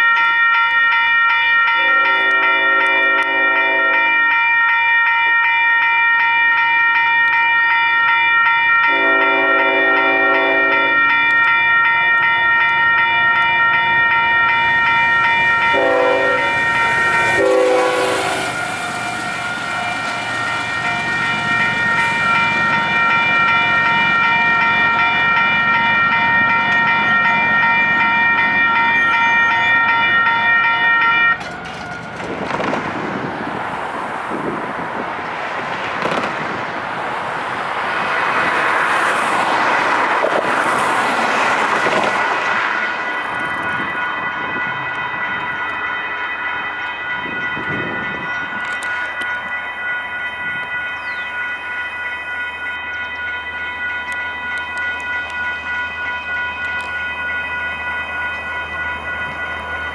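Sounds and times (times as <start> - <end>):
crossing warning bell ringing: 0.0 - 59.9
train horn blasts: 1.7 - 4.4, 8.8 - 11.3, 13.6 - 21.0
train wheels clattering on rails: 8.8 - 49.7.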